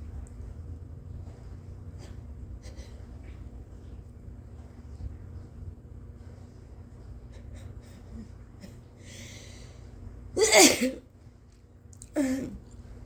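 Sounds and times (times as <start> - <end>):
woman sneezing: 10.4 - 11.0.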